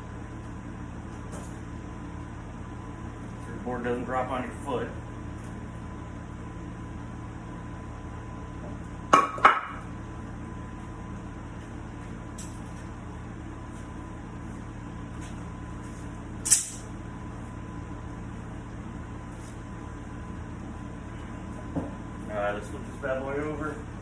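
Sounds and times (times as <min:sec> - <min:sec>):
steady shop hum: 0:00.0 - 0:24.0
metal clamps clanking: 0:16.5 - 0:16.9.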